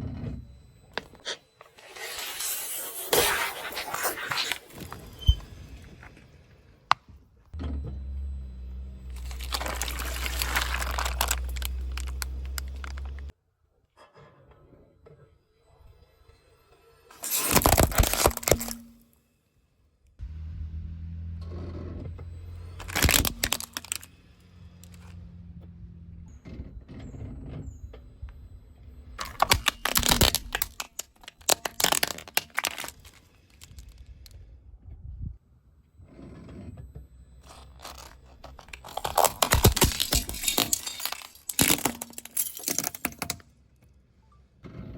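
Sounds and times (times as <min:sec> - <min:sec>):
tyre crunching objects: 0:01.0 - 0:06.1, 0:09.1 - 0:13.3, 0:17.1 - 0:18.9, 0:22.6 - 0:24.1, 0:29.2 - 0:34.0, 0:37.4 - 0:43.4
car rumble: 0:07.6 - 0:13.3, 0:20.2 - 0:31.3.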